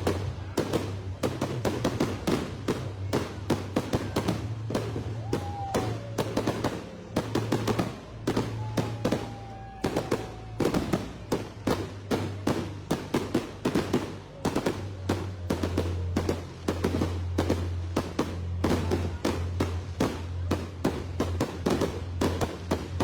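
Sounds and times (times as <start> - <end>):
fireworks bangs and crackles: 0.0 - 23.0
faint firework whistle: 4.8 - 6.9, 7.5 - 11.4.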